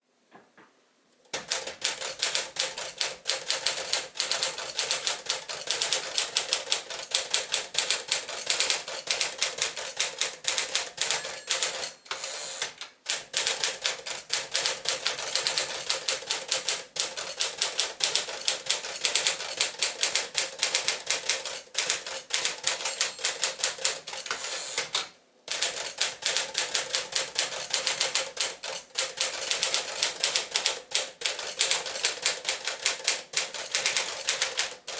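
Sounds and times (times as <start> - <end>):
typewriter key clacks: 13.6 - 34.9.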